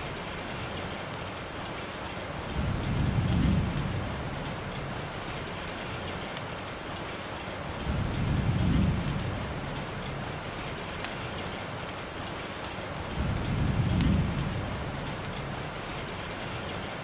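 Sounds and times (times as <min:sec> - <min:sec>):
steady rainfall hiss: 0:00.0 - 0:17.0
distant thunder rumbles: 0:02.4 - 0:05.8, 0:07.7 - 0:11.6, 0:13.0 - 0:16.7.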